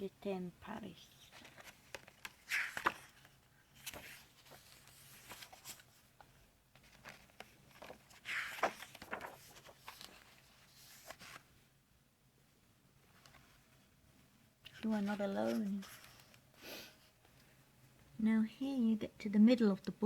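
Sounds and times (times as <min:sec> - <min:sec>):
book pages turning: 0:01.1 - 0:11.5, 0:14.7 - 0:16.4
paper snap: 0:01.9 - 0:03.0.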